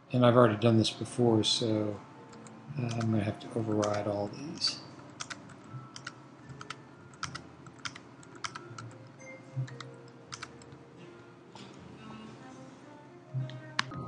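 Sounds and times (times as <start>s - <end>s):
keyboard key clicks: 4.6s - 8.9s, 9.7s - 10.8s.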